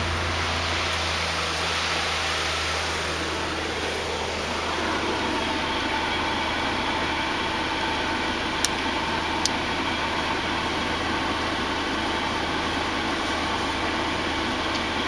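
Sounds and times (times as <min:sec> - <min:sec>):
car engine idling: 0:00.0 - 0:15.0.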